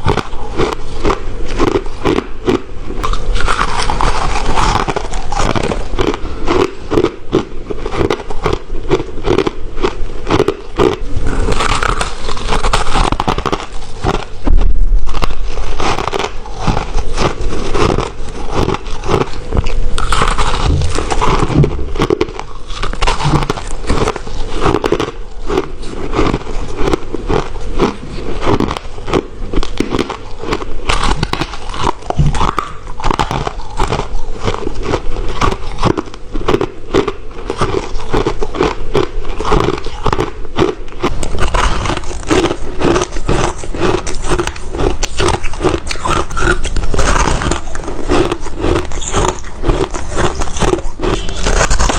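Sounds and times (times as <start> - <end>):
ice being chewed: 0.0 - 51.9.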